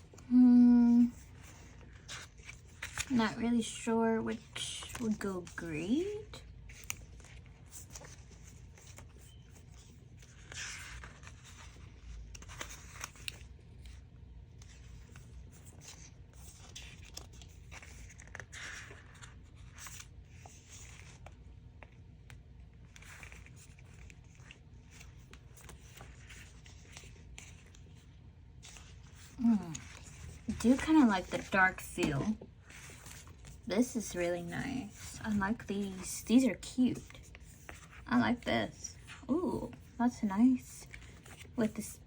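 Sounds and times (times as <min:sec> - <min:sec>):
paper rustling and crinkling: 0:00.1 - 0:42.0.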